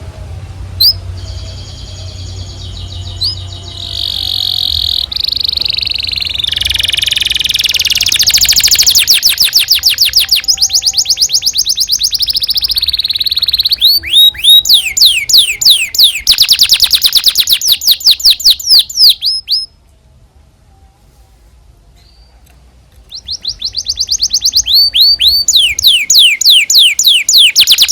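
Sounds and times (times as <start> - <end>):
canary singing: 0.0 - 19.8, 22.0 - 27.9.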